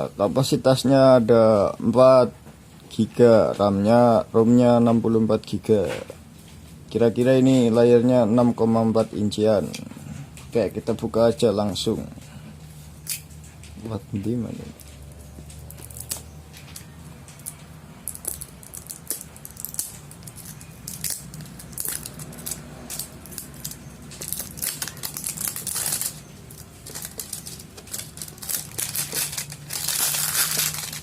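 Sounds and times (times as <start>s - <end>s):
packaging scraping and crinkling: 14.7s - 31.0s.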